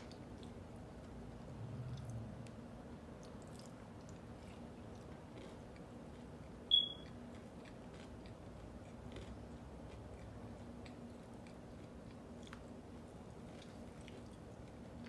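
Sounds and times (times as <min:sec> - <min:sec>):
low hum: 0:00.0 - 0:04.6
chewing food: 0:00.0 - 0:15.0.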